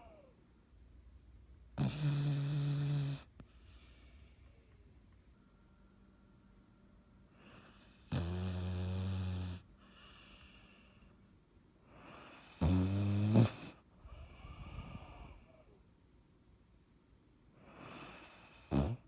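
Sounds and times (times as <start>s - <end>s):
pet snoring: 1.8s - 3.3s, 7.6s - 9.7s, 12.1s - 13.8s, 17.7s - 19.0s
soft breathing: 3.2s - 6.4s, 9.7s - 12.6s, 13.8s - 15.8s.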